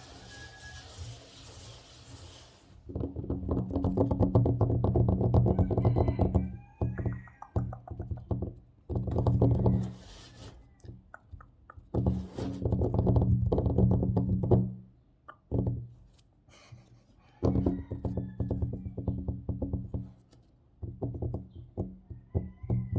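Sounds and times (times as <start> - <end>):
fingertips tapping on tabletop: 2.9 - 10.0, 17.4 - 22.9
scratching on table surface: 9.1 - 10.8, 11.9 - 13.0.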